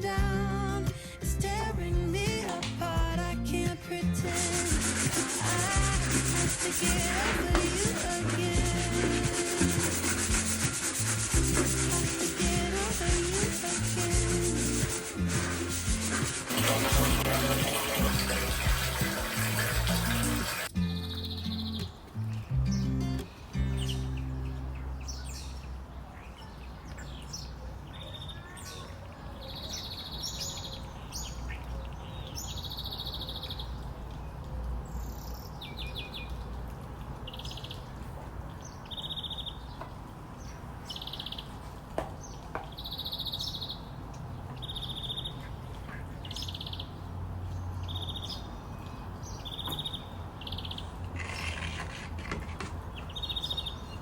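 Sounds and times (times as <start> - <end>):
low background rumble: 0.0 - 4.8
small birds chirping: 4.2 - 54.0.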